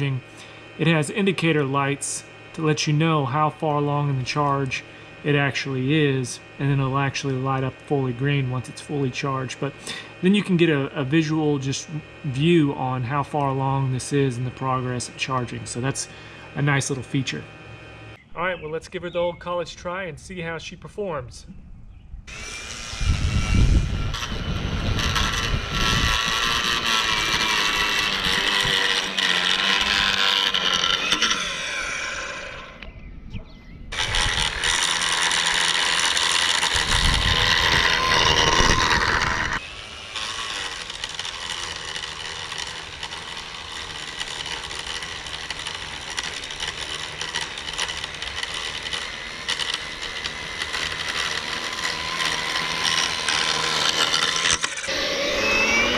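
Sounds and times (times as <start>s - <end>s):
edger blade cutting lawn edge: 0.0s - 18.2s, 22.3s - 32.9s, 33.9s - 55.9s.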